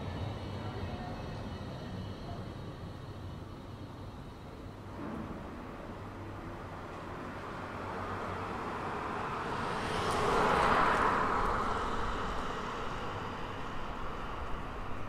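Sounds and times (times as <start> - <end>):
low city hum: 0.0 - 15.0
vehicle passing by: 7.0 - 14.9.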